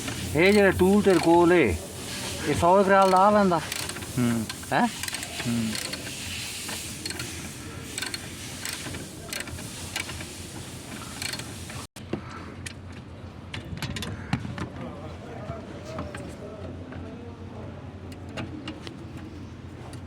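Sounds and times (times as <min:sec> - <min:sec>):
hand tools on metal: 0:00.0 - 0:10.3
workshop noise: 0:00.0 - 0:12.2.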